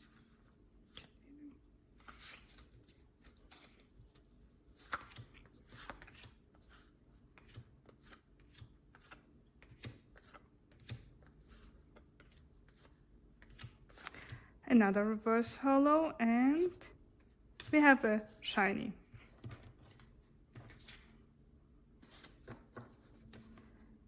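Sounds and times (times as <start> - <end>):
cards tapping and rustling: 2.0 - 14.6, 19.1 - 21.2, 22.0 - 23.8.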